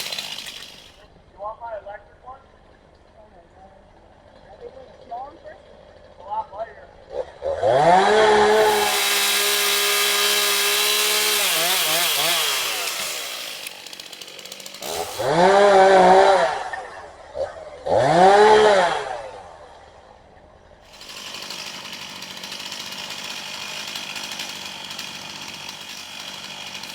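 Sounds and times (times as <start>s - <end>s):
chainsaw engine revving: 0.0s - 1.0s, 7.1s - 16.7s, 17.8s - 19.2s, 20.9s - 26.9s.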